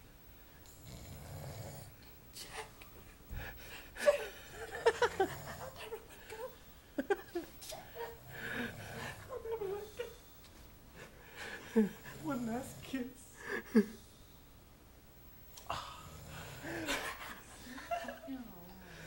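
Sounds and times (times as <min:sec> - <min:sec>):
man snoring: 0:00.7 - 0:01.9, 0:15.6 - 0:16.9
stifled wheezy laughter: 0:03.9 - 0:10.3, 0:13.4 - 0:14.1, 0:16.6 - 0:18.3.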